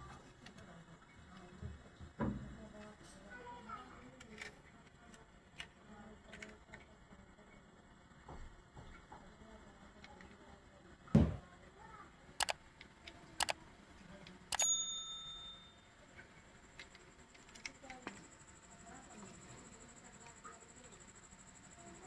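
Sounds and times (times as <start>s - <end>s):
handling thump: 11.2s - 11.4s
sharp clicks: 12.4s - 13.6s.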